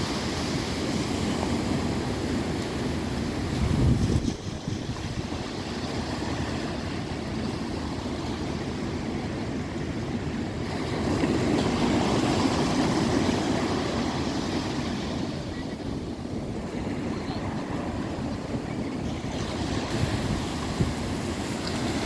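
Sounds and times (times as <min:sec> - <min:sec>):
wind buffeting microphone: 0:00.0 - 0:07.3, 0:15.0 - 0:22.0
sea waves breaking: 0:00.0 - 0:22.0.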